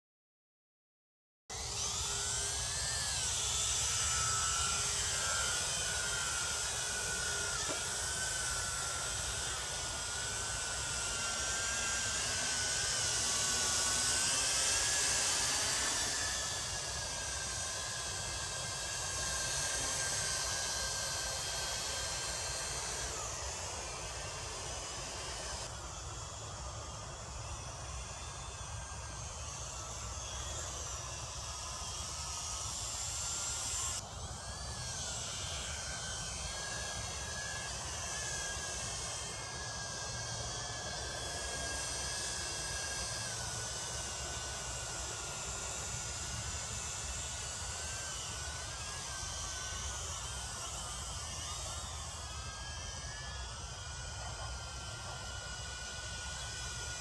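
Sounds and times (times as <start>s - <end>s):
toy drone propellers whirring: 1.5s - 57.0s.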